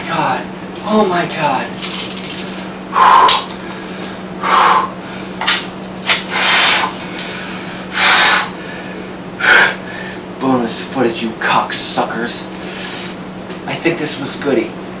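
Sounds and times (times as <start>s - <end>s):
man breathing hard: 2.9s - 5.4s, 6.3s - 10.3s.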